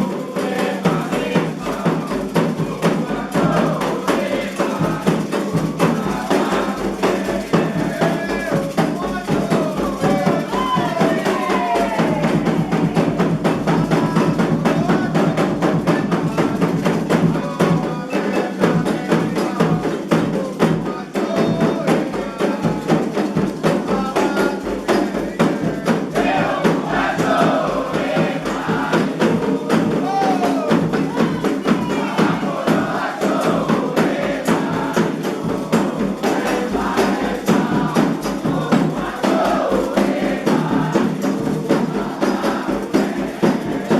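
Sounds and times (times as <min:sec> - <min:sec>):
group of voices chanting: 0:00.0 - 0:43.9
hand drums and percussion: 0:00.0 - 0:43.9.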